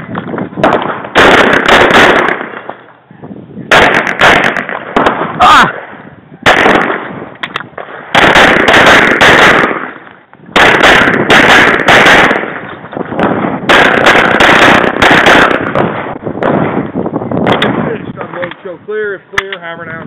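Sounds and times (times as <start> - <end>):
pistol shots: 0.0 - 2.9, 3.7 - 16.8.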